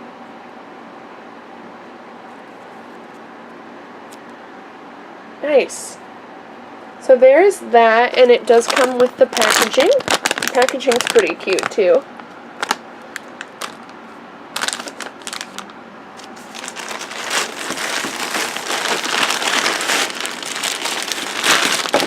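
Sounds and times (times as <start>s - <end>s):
packaging crinkling: 8.0s - 22.0s.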